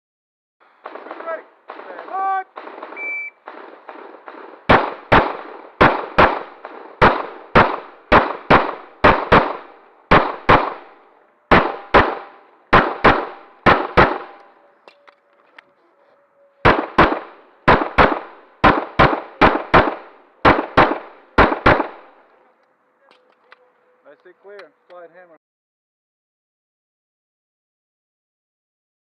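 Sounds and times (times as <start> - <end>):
pistol shots: 0.8 - 15.0, 16.6 - 22.2.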